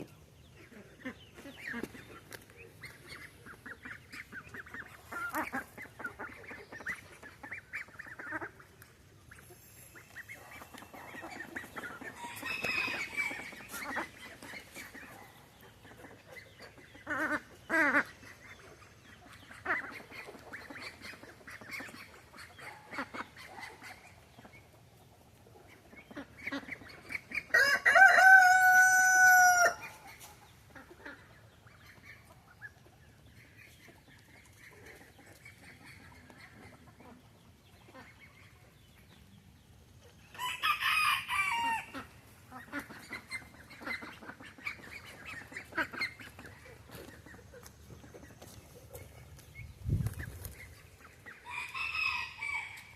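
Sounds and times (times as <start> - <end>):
chickens clucking: 0.0 - 52.9
rooster crowing: 12.2 - 13.4, 27.6 - 29.8, 40.4 - 41.9, 51.5 - 52.9.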